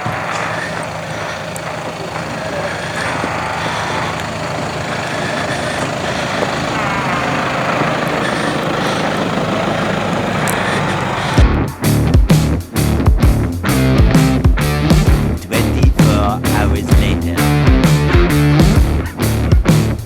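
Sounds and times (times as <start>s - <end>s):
indistinct voices: 0.0s - 18.6s
vehicle engine running: 0.0s - 20.0s
loud music: 10.6s - 20.0s.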